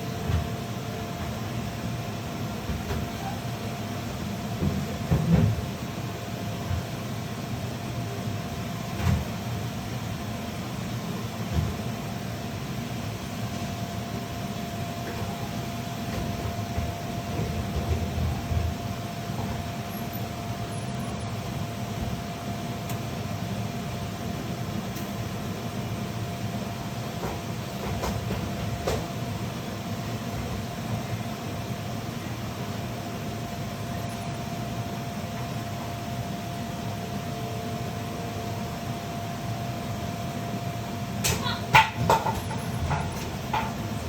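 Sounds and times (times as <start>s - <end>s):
low mechanical hum: 0.0s - 44.0s
faint whine: 18.2s - 24.0s, 31.9s - 41.1s.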